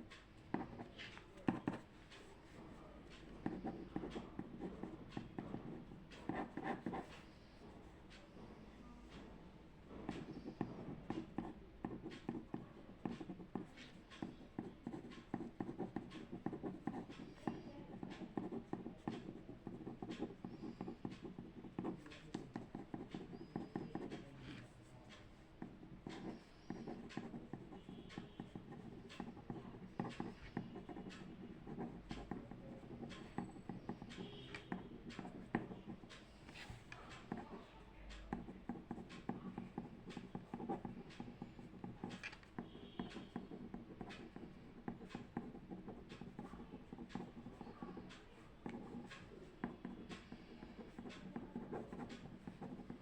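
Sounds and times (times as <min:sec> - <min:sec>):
pen scratching on paper: 0:00.5 - 0:07.8, 0:10.0 - 0:53.0.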